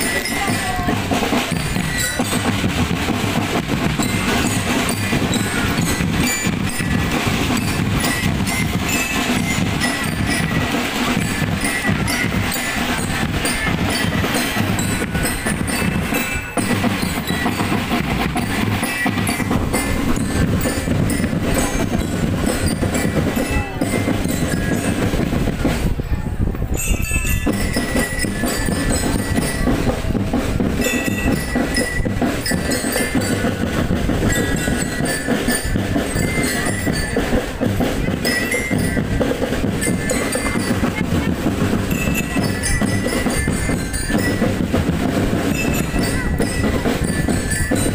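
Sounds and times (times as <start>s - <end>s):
bell lyra melody: 0.0s - 25.8s, 26.7s - 47.9s
marching drums beating: 0.0s - 47.9s.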